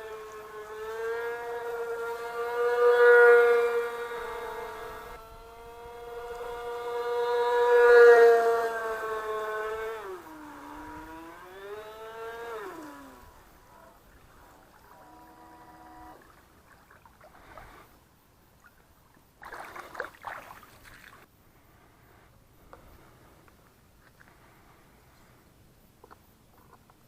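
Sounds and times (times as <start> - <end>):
electric motor whining: 0.0 - 16.3.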